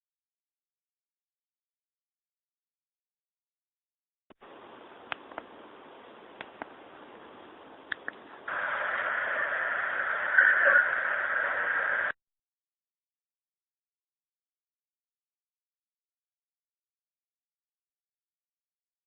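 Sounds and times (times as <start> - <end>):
recording hiss: 4.3 - 12.2
soft clicks: 7.9 - 8.2.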